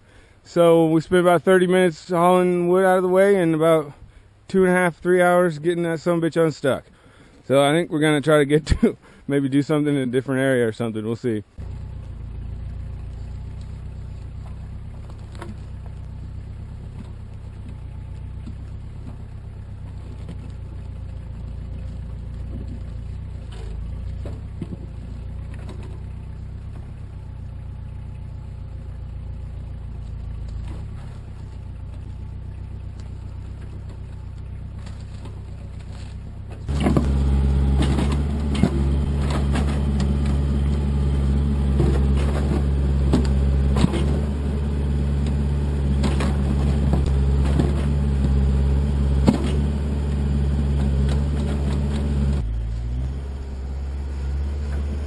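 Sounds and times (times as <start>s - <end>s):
diesel engine running: 11.4s - 55.0s.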